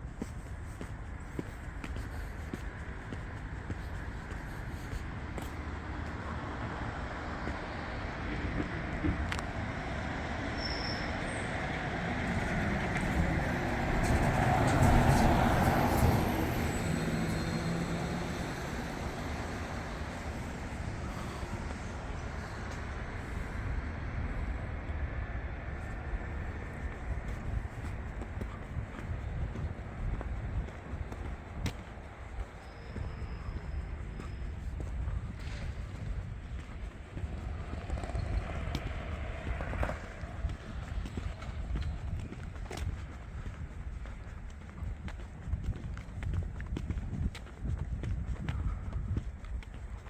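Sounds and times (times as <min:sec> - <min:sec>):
city hum: 0:00.0 - 0:50.0
vehicle passing by: 0:06.3 - 0:32.2, 0:35.0 - 0:43.7.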